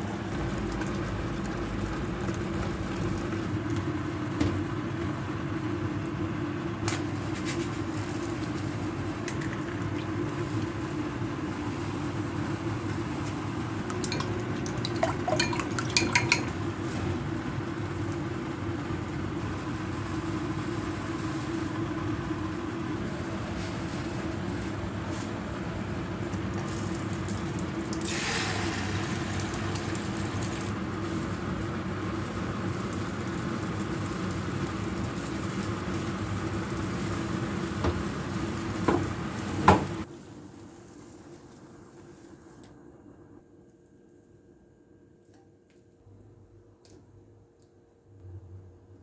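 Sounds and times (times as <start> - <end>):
dishes clinking: 14.9 - 16.6.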